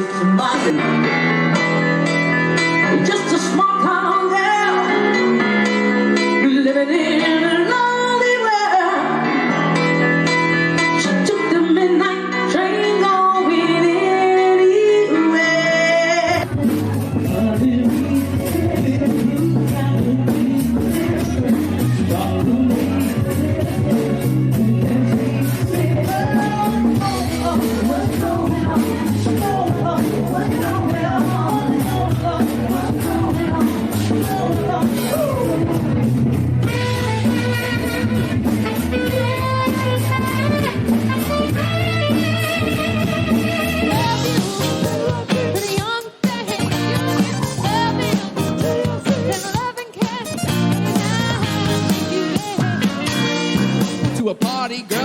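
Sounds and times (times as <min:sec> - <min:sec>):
live rock band playing: 0:00.0 - 0:55.0
person singing: 0:10.8 - 0:55.0.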